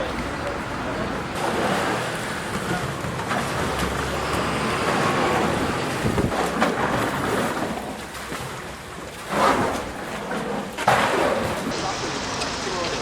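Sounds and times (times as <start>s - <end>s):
vehicle engine rumbling: 0.0s - 7.6s
outdoor noise: 0.0s - 13.0s.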